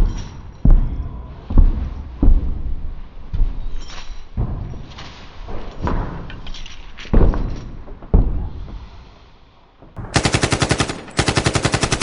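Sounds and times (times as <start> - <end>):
heavy thumps: 0.0 - 9.2
rapid automatic gunfire: 10.0 - 12.0.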